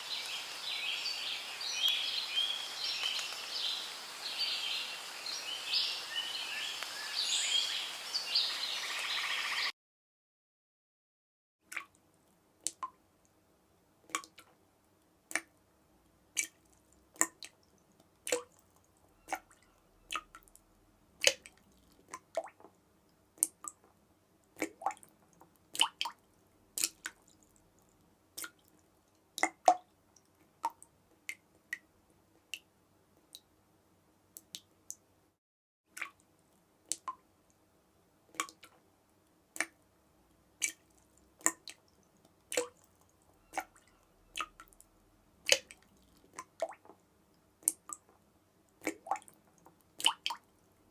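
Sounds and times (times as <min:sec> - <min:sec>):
water dripping: 0:00.0 - 0:08.3, 0:11.7 - 0:13.4, 0:14.1 - 0:14.6, 0:15.3 - 0:15.6, 0:16.3 - 0:33.5, 0:34.3 - 0:35.0, 0:35.9 - 0:37.6, 0:38.3 - 0:50.9
faint steady background noise: 0:11.6 - 0:50.9.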